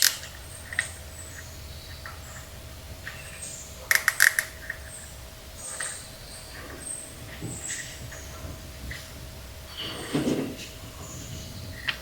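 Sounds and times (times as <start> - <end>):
sharp clicks: 0.0 - 1.0, 3.9 - 4.9.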